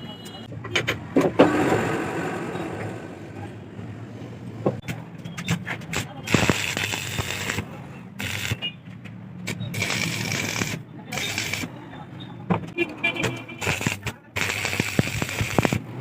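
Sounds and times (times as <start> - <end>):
metal clicks and knocks: 0.5 - 1.6.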